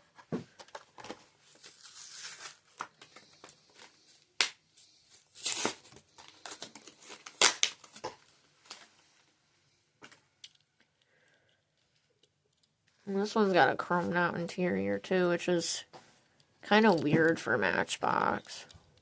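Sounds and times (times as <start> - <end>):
plastic packaging crinkling: 0.9 - 3.9, 5.2 - 9.1
card tearing: 1.6 - 3.0, 5.3 - 8.0.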